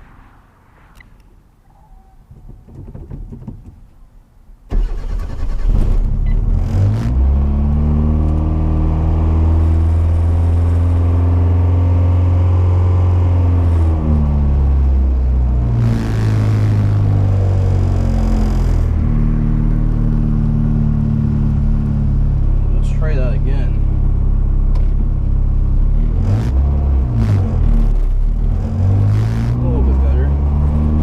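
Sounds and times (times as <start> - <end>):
car engine starting and idling: 2.0 - 8.6, 14.2 - 31.0.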